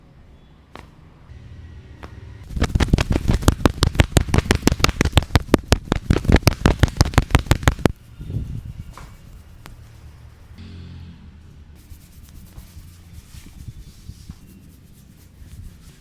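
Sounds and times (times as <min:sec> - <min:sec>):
hands slapping on skin: 0:00.8 - 0:01.0, 0:02.0 - 0:08.0.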